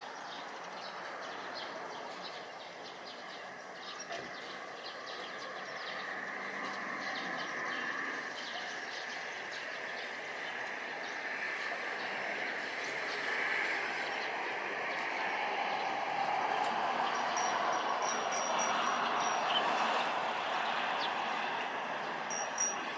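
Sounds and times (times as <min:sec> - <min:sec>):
bird chirps: 0:17.2 - 0:19.7.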